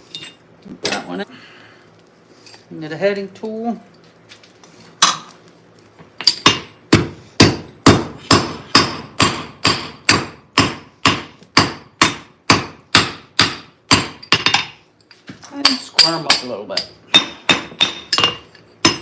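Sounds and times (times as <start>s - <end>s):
hammer ringing on metal: 7.4s - 14.6s.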